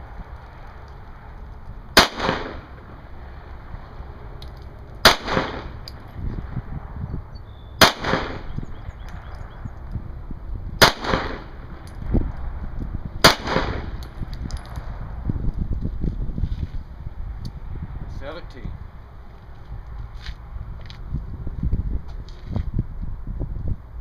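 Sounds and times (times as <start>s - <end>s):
wind buffeting microphone: 0.0s - 24.0s
pistol shots with echo: 2.0s - 2.7s, 5.0s - 5.8s, 7.8s - 8.5s, 10.8s - 11.5s, 13.2s - 14.0s.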